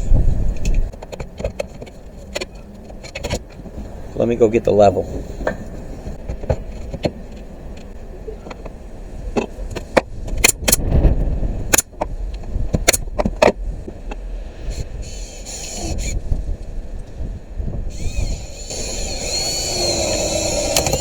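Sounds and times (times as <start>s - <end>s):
sharp knocks and clicks: 9.4s - 10.8s.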